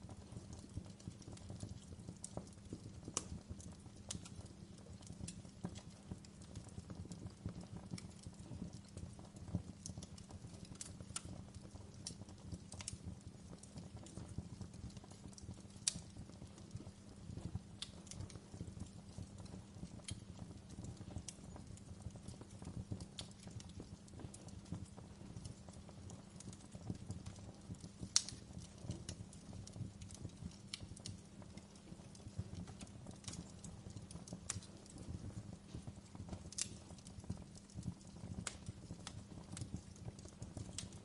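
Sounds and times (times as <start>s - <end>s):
campfire crackling and popping: 0.0s - 41.0s
low rumble of burning fire: 0.0s - 41.0s.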